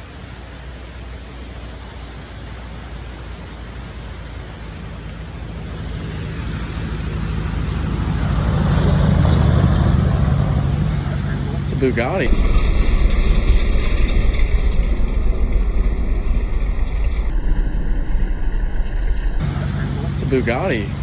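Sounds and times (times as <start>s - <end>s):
car driving past: 0.0s - 13.2s.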